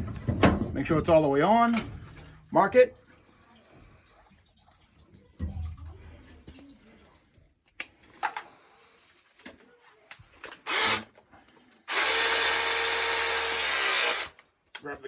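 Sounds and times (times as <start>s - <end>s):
power tool motor whining: 10.6s - 11.1s, 11.9s - 14.4s.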